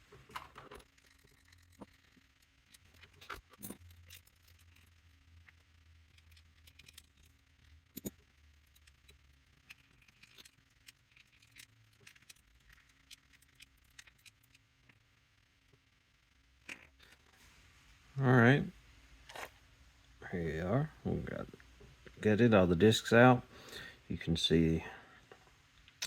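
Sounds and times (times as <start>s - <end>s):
low steady hum: 0.0s - 26.0s
metal lock parts clicking: 6.2s - 7.3s, 9.7s - 14.6s.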